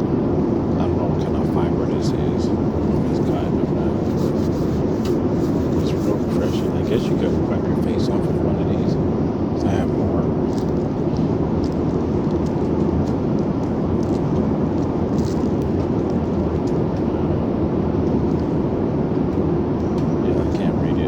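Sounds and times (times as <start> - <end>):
airliner cabin engine and airflow: 0.0 - 21.0.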